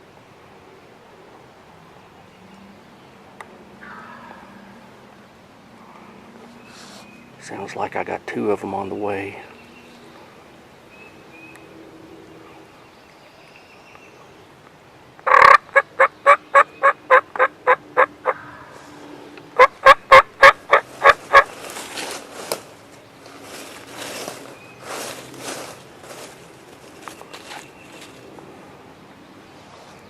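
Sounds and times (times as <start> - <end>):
turkey yelping: 15.3 - 18.8, 19.6 - 21.5
soft rustling: 20.8 - 28.4.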